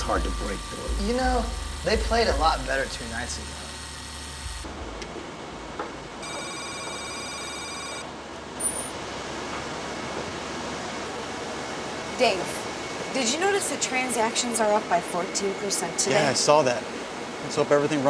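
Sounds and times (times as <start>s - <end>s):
telephone trilling ring: 6.2s - 8.1s.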